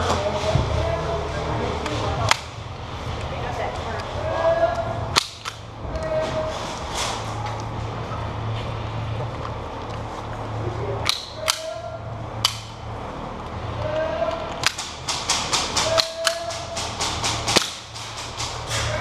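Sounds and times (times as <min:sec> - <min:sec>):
airsoft guns firing: 0:14.6 - 0:18.6.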